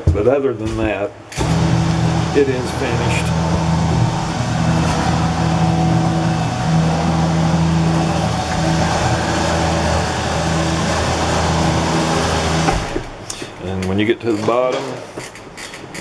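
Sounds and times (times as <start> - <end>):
electric hoist motor running: 1.3 - 13.3.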